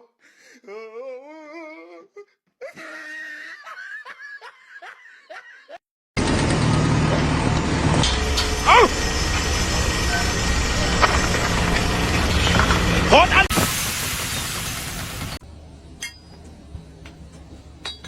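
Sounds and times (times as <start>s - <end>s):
person laughing and giggling: 0.7s - 5.8s
loud machine noise: 6.2s - 15.4s.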